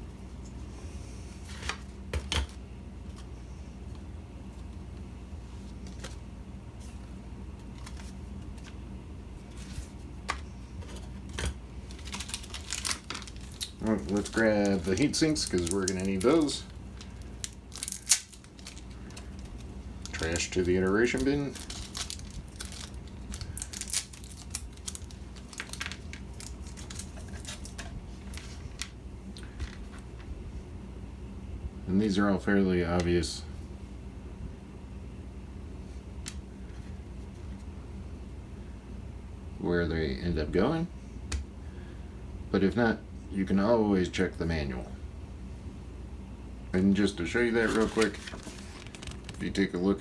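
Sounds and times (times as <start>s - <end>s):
low steady hum: 0.0s - 50.0s
packaging rustling: 9.4s - 30.0s, 47.3s - 50.0s.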